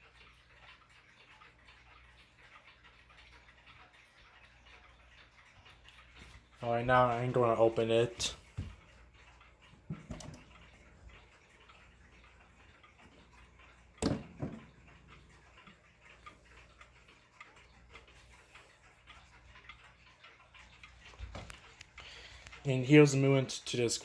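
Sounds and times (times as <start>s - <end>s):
clock ticking: 0.0s - 24.0s
louder knocks: 14.0s - 14.6s.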